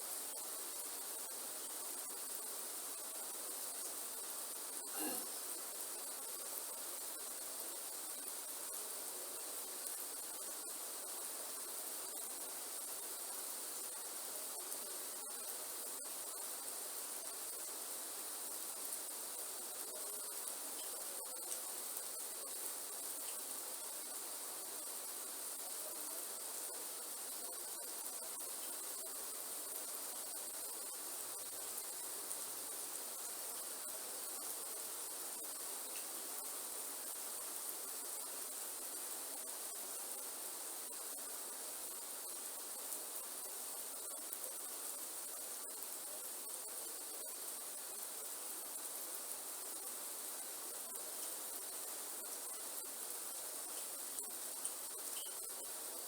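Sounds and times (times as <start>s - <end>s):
insect chorus: 0.0s - 56.0s
rain hissing: 0.0s - 56.0s.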